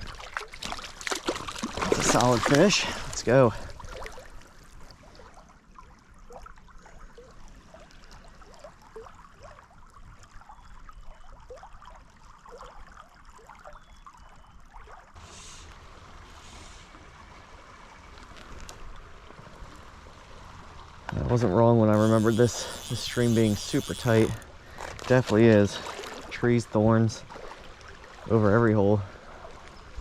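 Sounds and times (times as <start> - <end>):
water plops and drips: 0.0 - 3.0, 10.2 - 15.1
rush of water: 0.0 - 10.6, 11.5 - 30.0
stream trickling and gurgling: 0.0 - 30.0.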